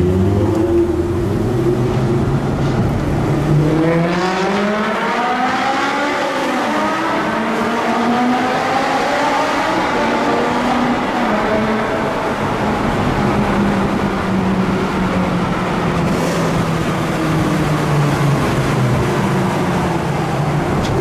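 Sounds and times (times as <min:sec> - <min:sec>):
sports car engine accelerating: 0:00.0 - 0:21.0.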